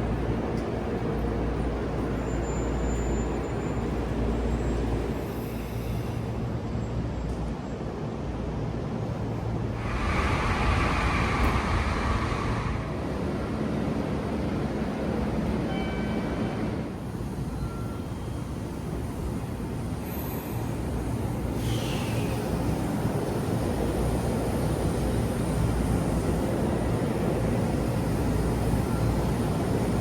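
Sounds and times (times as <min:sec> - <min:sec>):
louder higher train noise: 0:00.0 - 0:30.0
train running rumble: 0:08.8 - 0:17.6.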